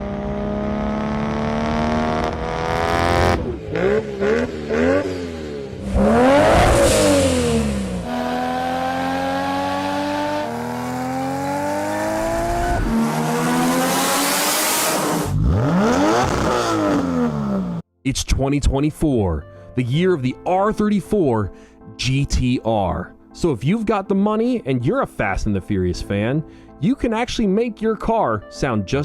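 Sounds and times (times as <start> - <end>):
turbocharged car engine revving: 0.0 - 17.8.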